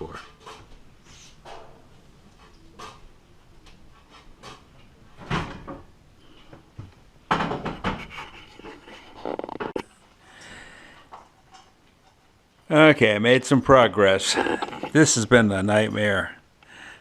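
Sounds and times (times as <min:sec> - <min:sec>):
objects clattering on hard surface: 0:03.9 - 0:09.8, 0:14.3 - 0:15.0.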